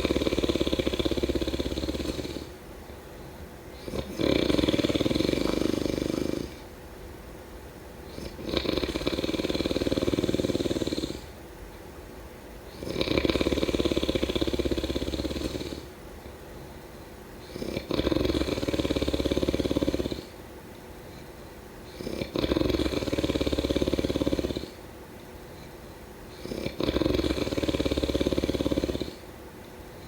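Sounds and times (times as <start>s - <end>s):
person snoring: 0.0s - 2.6s, 3.7s - 6.7s, 8.1s - 11.3s, 12.8s - 15.9s, 17.4s - 20.3s, 21.9s - 24.8s, 26.3s - 29.2s.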